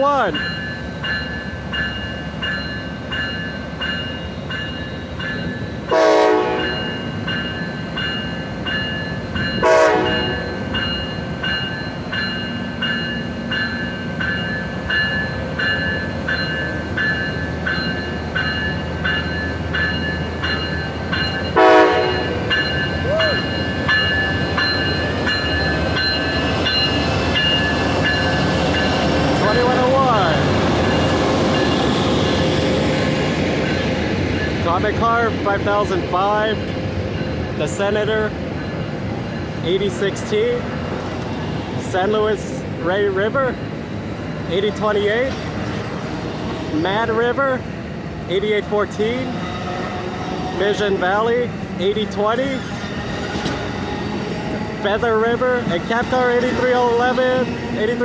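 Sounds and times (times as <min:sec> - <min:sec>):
passenger train rumbling by: 0:00.0 - 0:58.0
train horn blasts: 0:05.9 - 0:07.0, 0:09.6 - 0:10.6, 0:21.5 - 0:22.5.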